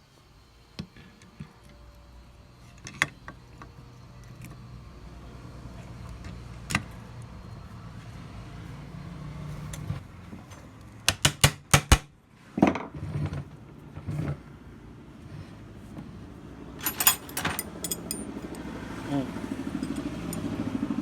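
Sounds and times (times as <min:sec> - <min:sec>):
hand tools clicking on metal: 0:16.8 - 0:18.6, 0:19.8 - 0:20.6.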